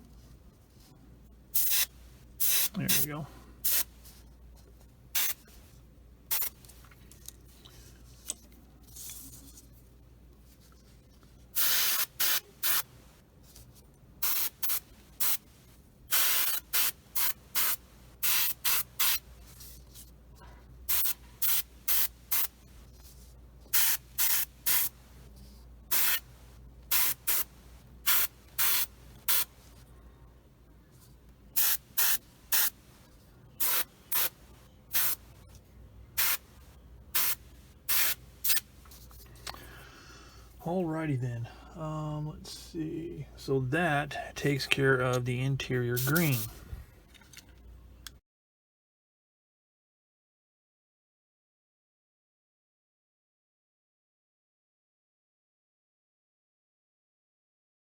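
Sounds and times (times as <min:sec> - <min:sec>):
airbrush spraying bursts: 0:01.6 - 0:03.9, 0:05.2 - 0:05.4, 0:11.6 - 0:12.9, 0:16.1 - 0:19.2, 0:23.7 - 0:25.0, 0:25.9 - 0:26.3, 0:26.9 - 0:29.6, 0:31.6 - 0:32.8, 0:33.6 - 0:35.3, 0:36.2 - 0:36.5, 0:37.2 - 0:38.6, 0:46.0 - 0:46.5.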